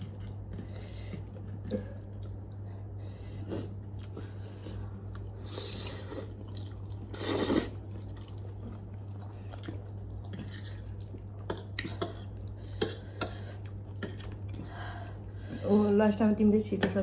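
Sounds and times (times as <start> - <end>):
chewing: 0.0 - 2.9, 3.6 - 14.7
steady low hum: 0.0 - 17.0
loud noodle slurp: 7.1 - 7.8.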